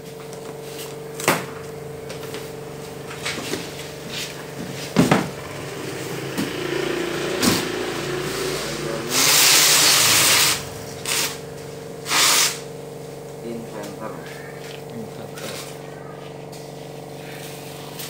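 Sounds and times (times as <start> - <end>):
rustling and scraping of packing: 0.0 - 1.2, 2.0 - 5.4, 13.8 - 18.0
steady low hum: 0.0 - 17.6.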